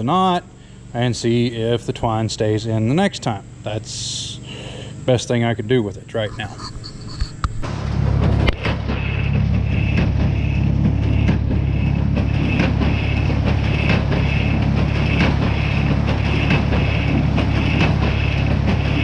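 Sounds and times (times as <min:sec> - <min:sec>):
hay baler plunger beat: 0:06.1 - 0:19.0
tractor engine running: 0:06.1 - 0:19.0
sharp machine clacks: 0:07.6 - 0:19.0.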